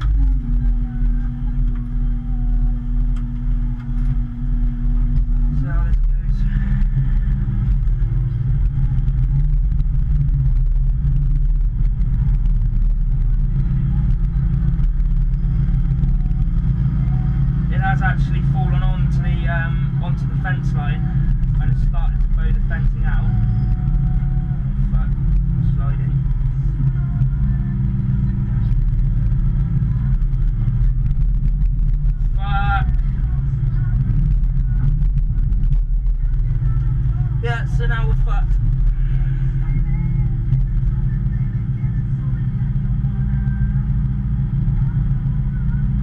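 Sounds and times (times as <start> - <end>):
excavator diesel engine drone: 0.0 - 46.0.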